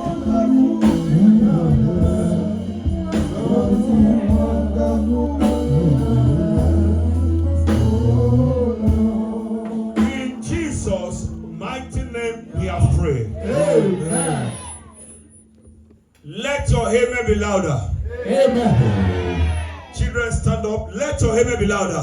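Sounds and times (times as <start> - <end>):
gospel music with singing: 0.0 - 22.0.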